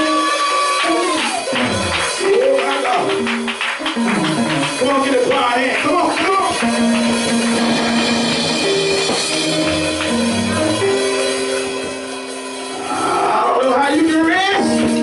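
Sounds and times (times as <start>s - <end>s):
held keyboard chords: 0.0s - 15.0s.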